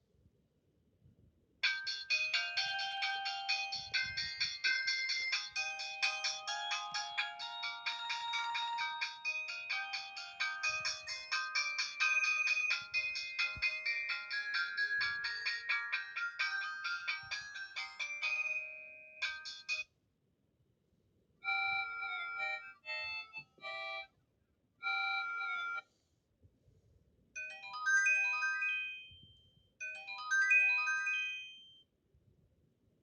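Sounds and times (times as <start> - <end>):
chiming phrases: 1.6 - 19.8, 27.4 - 31.8
phone ringtone melodies: 1.6 - 19.8, 21.5 - 24.1, 24.8 - 25.8, 27.4 - 31.8.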